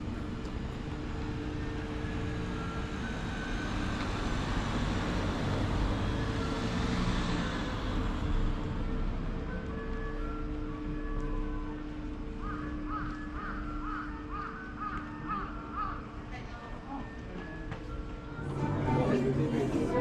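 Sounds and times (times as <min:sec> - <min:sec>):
drive machinery humming: 0:18.1 - 0:20.0.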